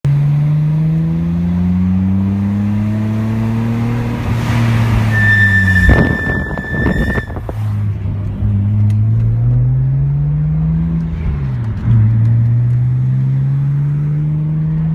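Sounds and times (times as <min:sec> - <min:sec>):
brakes squealing: 0:03.6 - 0:08.0.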